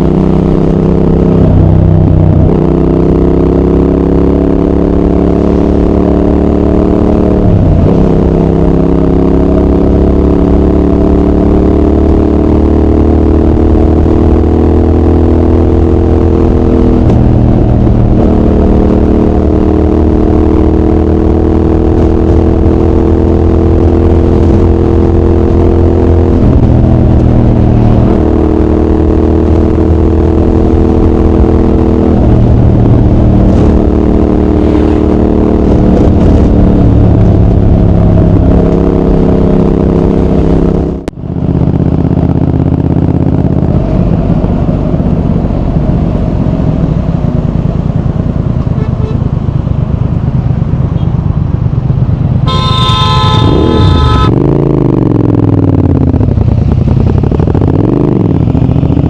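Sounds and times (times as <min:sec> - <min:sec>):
motorcycle engine accelerating: 0:00.0 - 0:59.0.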